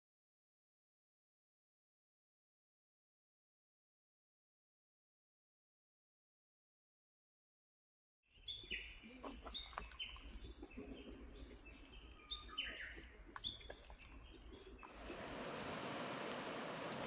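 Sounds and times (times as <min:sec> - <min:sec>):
small birds chirping: 0:08.3 - 0:17.0
flowing water rushing: 0:14.8 - 0:17.0
low outdoor rumble: 0:14.9 - 0:17.0.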